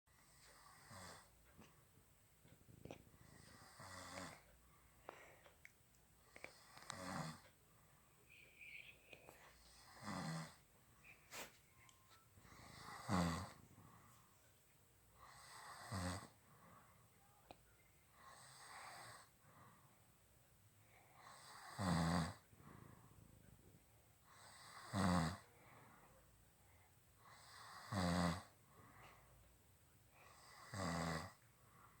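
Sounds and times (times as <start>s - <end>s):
quiet breathing: 0.1s - 32.0s
man snoring: 0.2s - 1.3s, 3.3s - 4.4s, 6.5s - 7.4s, 9.6s - 10.6s, 12.5s - 13.6s, 15.2s - 16.4s, 18.2s - 19.3s, 21.2s - 22.4s, 24.3s - 25.5s, 27.2s - 28.5s, 30.2s - 31.4s.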